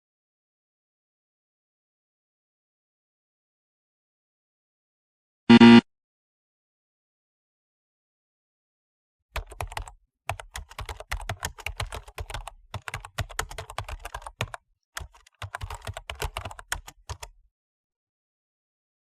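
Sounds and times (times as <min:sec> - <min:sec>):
keyboard typing: 0:09.4 - 0:17.4.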